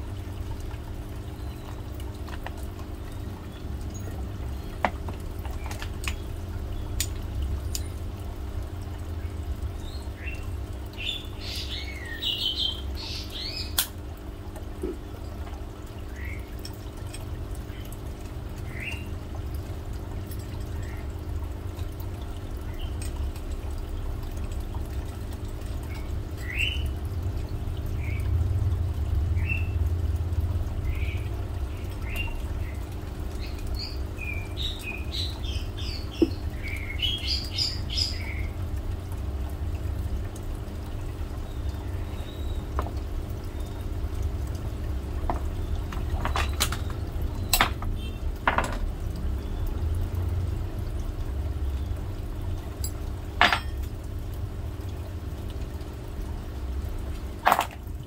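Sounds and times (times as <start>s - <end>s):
low rumble and hum: 0.0s - 58.0s
small birds chirping: 1.2s - 1.9s, 9.2s - 13.9s, 16.0s - 19.2s, 25.6s - 27.0s, 27.9s - 28.3s, 30.8s - 38.6s, 41.4s - 44.0s.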